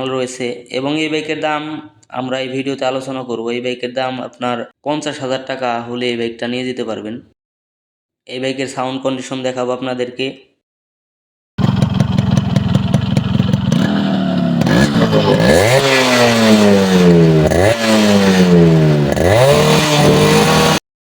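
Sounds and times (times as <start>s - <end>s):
motorcycle engine idling and revving: 11.6s - 20.8s.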